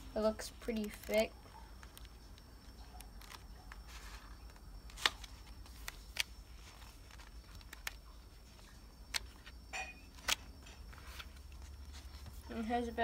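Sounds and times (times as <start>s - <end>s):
paper pages swishing: 3.2s - 9.5s.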